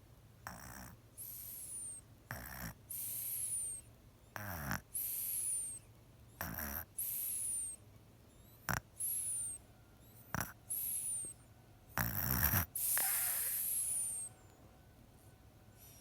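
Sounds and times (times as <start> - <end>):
snoring with whistle: 0.5 - 3.8, 4.4 - 5.8, 6.4 - 7.8, 8.6 - 9.6, 10.3 - 11.3, 12.0 - 14.4.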